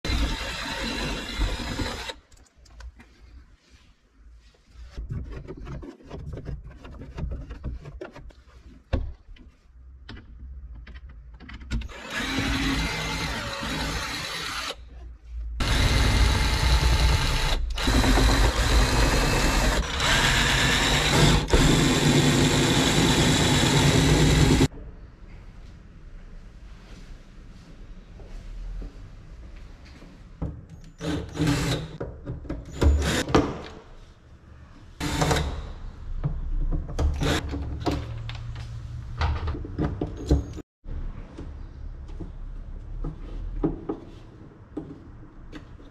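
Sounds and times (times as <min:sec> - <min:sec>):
power drill running: 0:11.9 - 0:14.8, 0:15.6 - 0:24.7.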